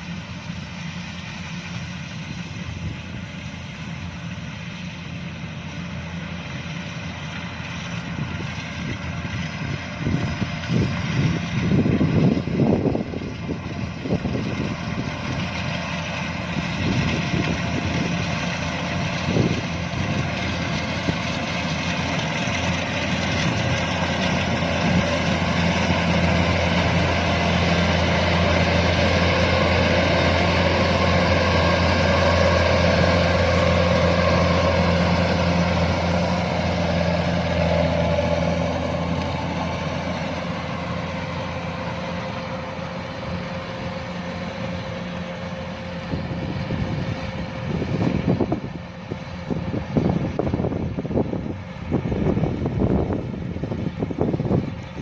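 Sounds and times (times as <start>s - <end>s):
combine harvester diesel engine running: 0.0s - 55.0s
threshing machinery: 0.0s - 55.0s.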